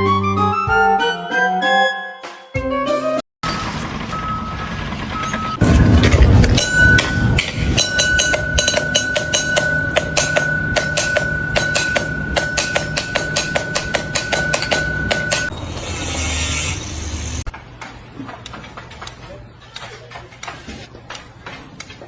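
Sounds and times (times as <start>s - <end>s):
steady high tone: 3.4s - 17.5s
ringing metallic knocks: 4.6s - 15.6s.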